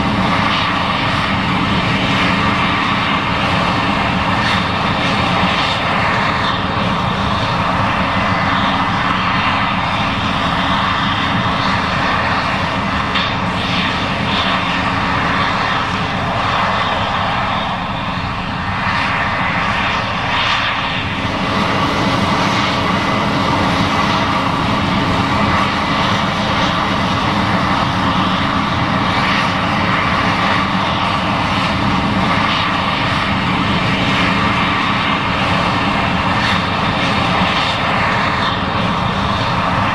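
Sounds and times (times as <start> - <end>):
combine harvester engine drone: 0.0 - 39.9.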